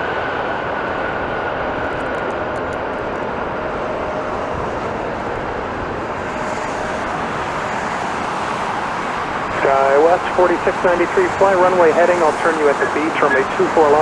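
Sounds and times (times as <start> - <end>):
jet engines roaring: 0.0 - 14.0
faint high whine: 9.4 - 14.0.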